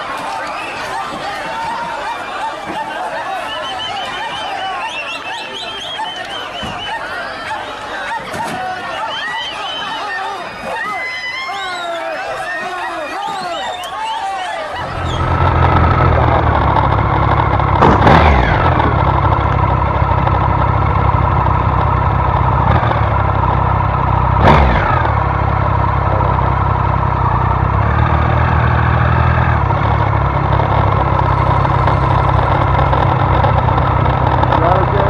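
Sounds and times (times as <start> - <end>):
vehicle engine and road noise: 14.8 - 35.0.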